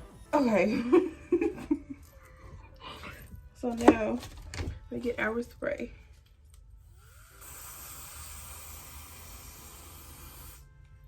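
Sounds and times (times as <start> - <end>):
aerosol spray can hissing: 6.9 - 10.8.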